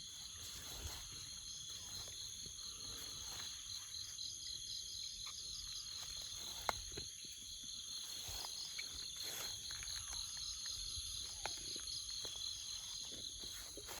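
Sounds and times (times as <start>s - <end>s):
insects trilling: 0.0s - 14.0s.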